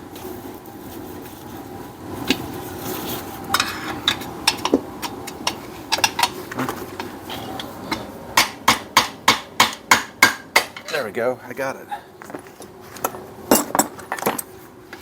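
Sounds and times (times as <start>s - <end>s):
tapping on metal: 7.9s - 11.0s
metal-on-metal knocks and clinks: 13.5s - 14.5s.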